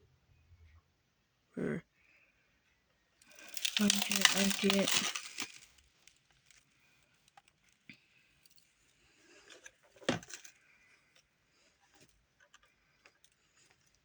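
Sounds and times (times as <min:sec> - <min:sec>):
plastic container clicks and rattles: 0:03.3 - 0:05.6, 0:09.9 - 0:10.5.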